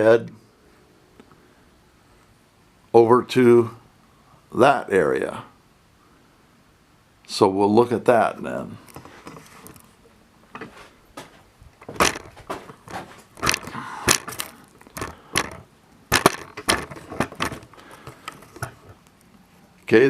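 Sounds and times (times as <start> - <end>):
knocks clicks and scuffs: 10.6 - 18.9.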